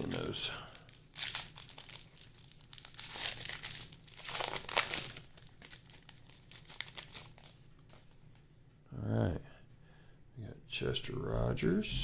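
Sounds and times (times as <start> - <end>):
card wrapper crinkling and rustling: 0.0 - 8.4.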